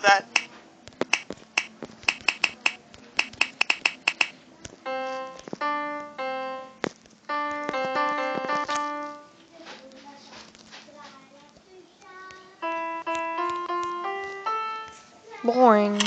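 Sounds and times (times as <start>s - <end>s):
electric piano notes and chords: 0.0s - 9.6s, 12.5s - 15.8s
finger snaps: 0.3s - 4.4s.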